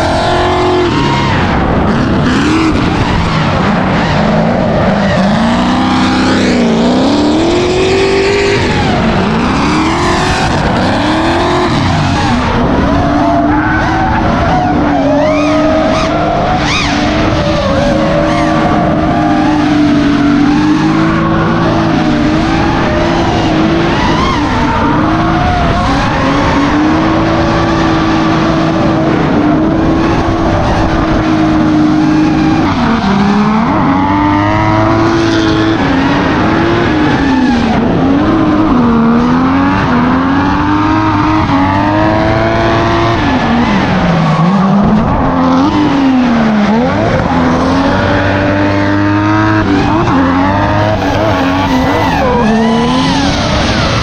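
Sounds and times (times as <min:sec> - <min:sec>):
car engines revving: 0:00.0 - 0:54.0
tyre squeal: 0:49.8 - 0:54.0.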